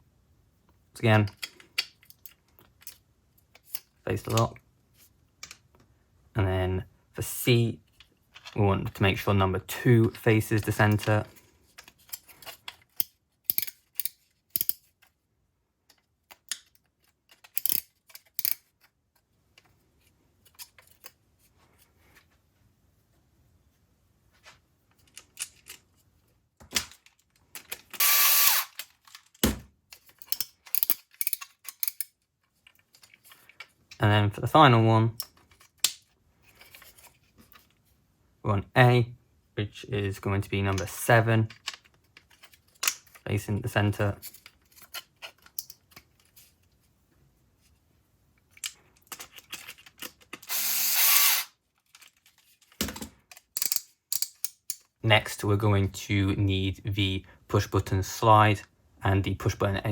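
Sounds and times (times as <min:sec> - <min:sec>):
plastic parts clicking: 0:07.9 - 0:09.0, 0:10.1 - 0:15.2, 0:15.8 - 0:19.7, 0:24.9 - 0:25.9, 0:26.6 - 0:34.0, 0:40.7 - 0:43.2, 0:44.2 - 0:46.5, 0:48.4 - 0:55.0
power screwdriver running: 0:28.0 - 0:28.8, 0:50.5 - 0:51.5.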